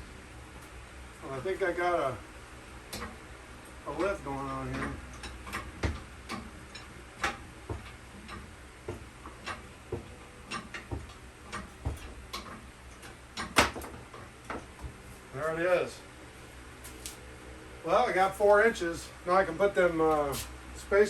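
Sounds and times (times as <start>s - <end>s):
jack pumping clicks and knocks: 3.9s - 15.0s.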